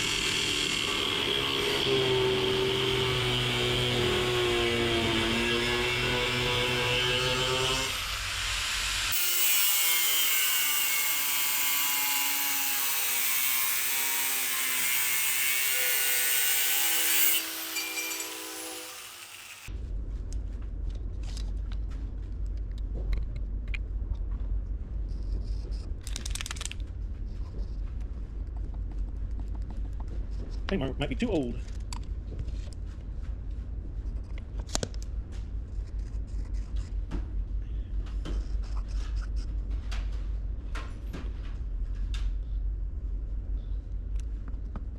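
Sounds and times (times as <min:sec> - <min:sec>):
power saw cutting metal: 0:00.0 - 0:19.7.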